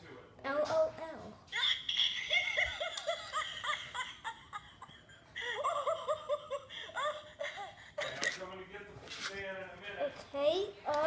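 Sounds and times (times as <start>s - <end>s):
child giggling: 1.5s - 8.2s.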